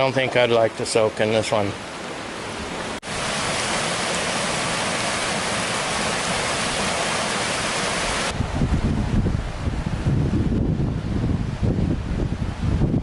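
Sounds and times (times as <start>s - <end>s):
water cascading down waterfall: 0.0s - 8.4s.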